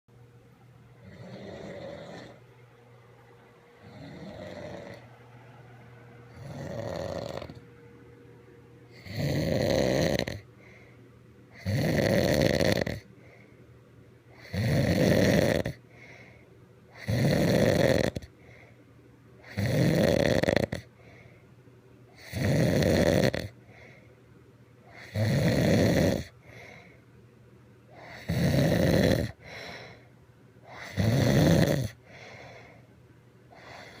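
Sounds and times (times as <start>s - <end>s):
man snoring: 1.0s - 2.4s, 3.8s - 5.1s, 6.3s - 7.6s, 8.9s - 10.5s, 11.5s - 13.1s, 14.4s - 15.8s, 17.0s - 18.3s, 19.4s - 20.9s, 22.2s - 23.6s, 24.9s - 26.4s, 28.0s - 30.0s, 30.7s - 32.0s, 33.6s - 34.0s
quiet breathing: 10.3s - 11.6s, 13.0s - 14.5s, 15.7s - 17.0s, 18.2s - 19.5s, 20.8s - 22.2s, 23.5s - 25.0s, 26.3s - 27.2s, 29.3s - 31.0s, 31.9s - 34.0s.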